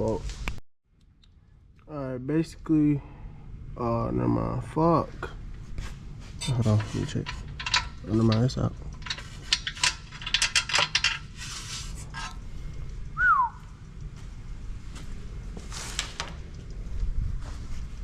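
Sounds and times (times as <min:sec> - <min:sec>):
metal tools clinking and rattling: 0:06.4 - 0:11.4
falling whistle-like chirp: 0:13.2 - 0:13.7.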